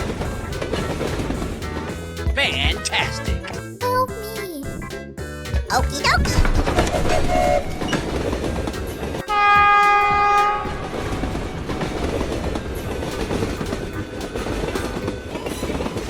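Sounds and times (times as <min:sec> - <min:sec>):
train rumbling along track: 0:00.0 - 0:16.0
train horn: 0:06.9 - 0:08.2, 0:09.2 - 0:12.6.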